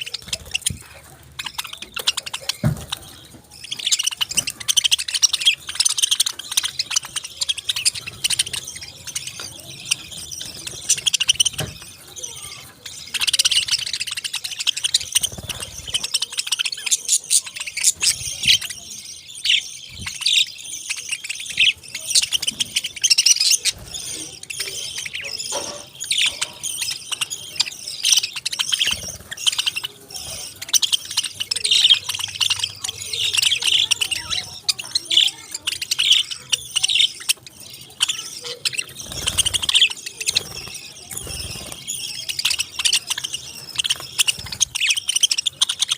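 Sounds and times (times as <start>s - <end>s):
parakeets chirping: 0.0s - 45.9s.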